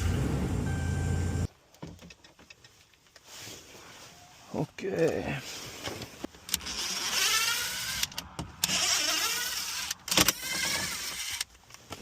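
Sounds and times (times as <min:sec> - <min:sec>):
small electric motor whining: 0:06.6 - 0:11.5.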